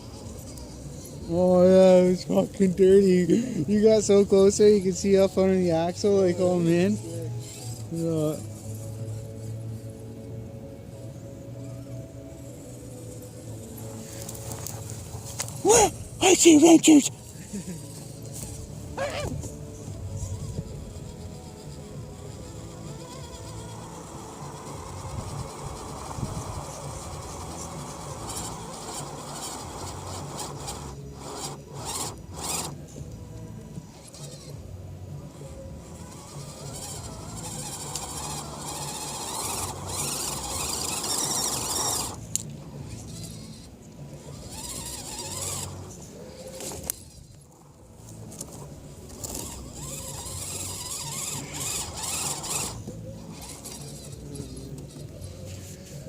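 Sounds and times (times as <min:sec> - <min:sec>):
electric motor whining: 0:04.1 - 0:56.0
tyres spinning in dirt: 0:20.4 - 0:32.8, 0:35.3 - 0:42.3, 0:43.1 - 0:55.4.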